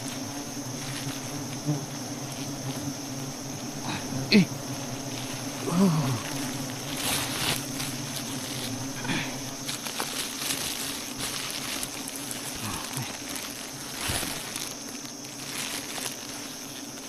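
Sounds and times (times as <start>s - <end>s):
honey bees buzzing: 0.0s - 17.0s.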